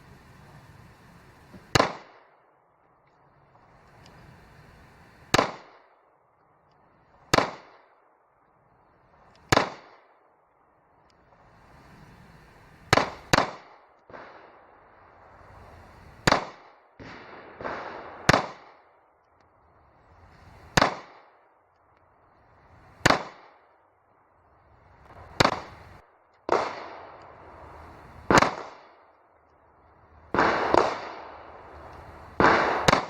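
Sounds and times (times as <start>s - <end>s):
pistol shots: 1.7s - 2.2s, 5.3s - 5.8s, 7.3s - 7.9s, 9.5s - 10.1s, 12.9s - 14.5s, 16.3s - 18.9s, 20.8s - 21.3s, 23.0s - 23.6s, 25.4s - 25.8s, 26.5s - 27.4s, 28.3s - 29.0s, 30.3s - 31.7s, 32.4s - 33.0s.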